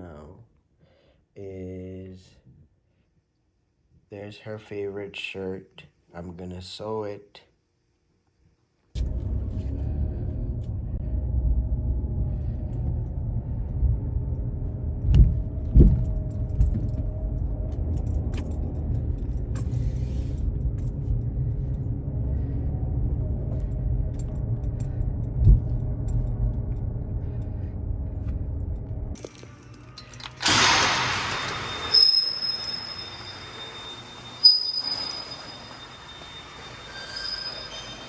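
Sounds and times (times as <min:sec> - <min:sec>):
car engine running: 0:09.0 - 0:29.2.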